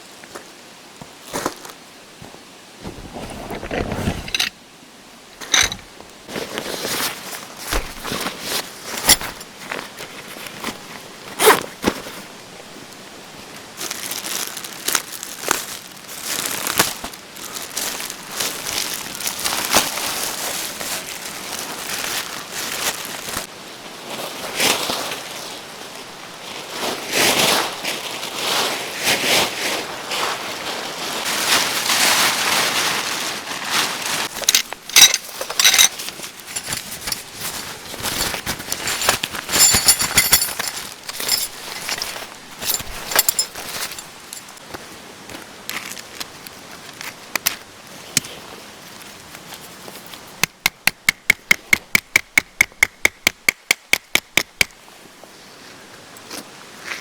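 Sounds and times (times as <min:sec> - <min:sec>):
plastic tarp crinkling: 0:13.8 - 0:23.5, 0:26.7 - 0:44.6.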